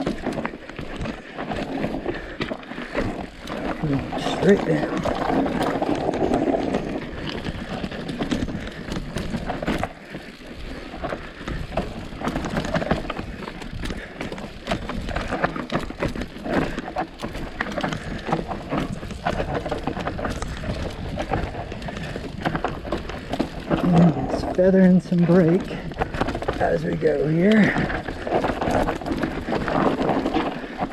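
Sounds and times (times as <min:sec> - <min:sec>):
bike knocking and rattling: 0:00.0 - 0:30.9
knobby tyres rolling over dirt: 0:00.0 - 0:30.9.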